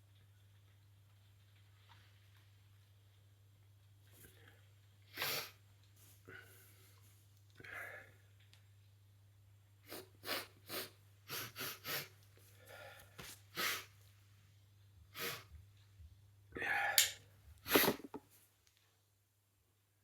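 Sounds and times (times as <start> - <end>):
sharp breaths and sniffs: 9.8 - 13.9.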